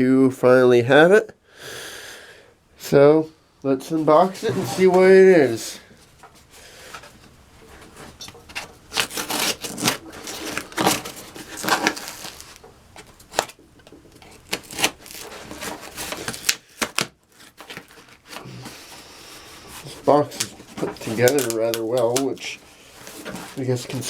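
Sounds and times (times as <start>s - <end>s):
cardboard box being opened: 7.8s - 13.6s, 14.2s - 24.0s.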